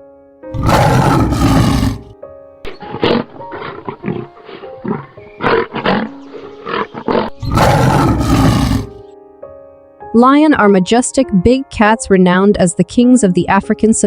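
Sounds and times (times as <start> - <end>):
soft background music: 0.0 - 14.0
lion roaring: 0.6 - 9.0.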